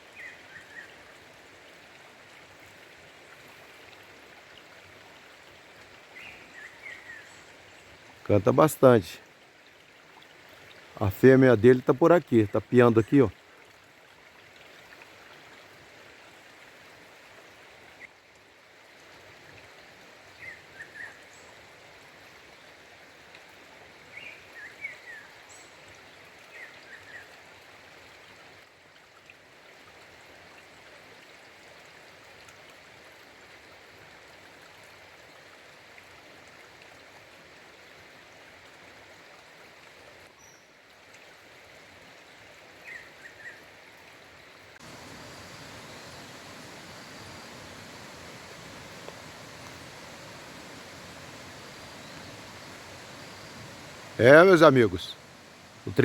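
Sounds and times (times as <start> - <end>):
bird chirping calls: 44.8 - 56.0
waterfall rushing: 44.8 - 56.0.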